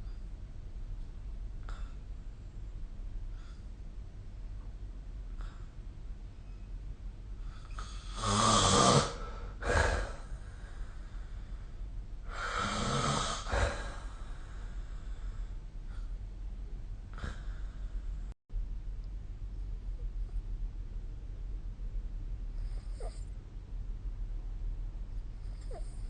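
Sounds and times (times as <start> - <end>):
person snoring: 7.8 - 10.3, 12.3 - 14.2
puff of breath: 12.3 - 16.1.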